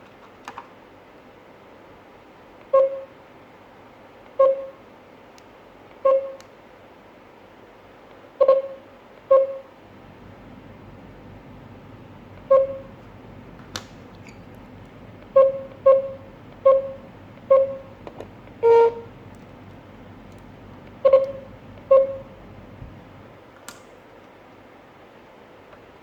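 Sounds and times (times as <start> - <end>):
alarm control panel beeps: 2.7 - 3.1, 4.4 - 4.8, 6.0 - 6.4, 8.4 - 9.7, 12.4 - 12.9, 15.3 - 18.0, 18.6 - 19.2, 21.0 - 22.4
faint clicks: 19.3 - 21.9.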